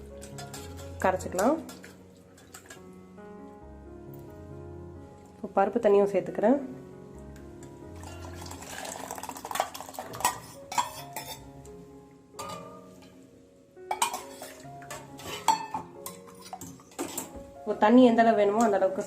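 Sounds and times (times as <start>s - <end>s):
soft background music: 0.0s - 19.0s
utensil clinking against a pot: 0.2s - 2.9s, 7.6s - 11.5s, 12.4s - 13.2s, 13.9s - 17.4s.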